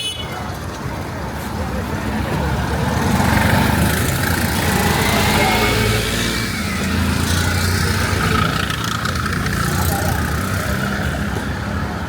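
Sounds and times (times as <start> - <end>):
street noise: 0.0 - 12.0
vehicle engine rumbling: 0.0 - 12.0.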